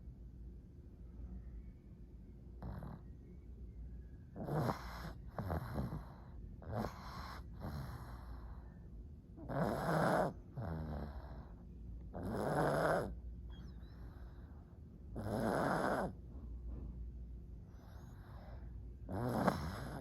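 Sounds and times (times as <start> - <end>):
dog snoring: 2.6 - 3.2, 4.4 - 8.7, 9.4 - 14.3, 15.1 - 16.2, 17.8 - 20.0.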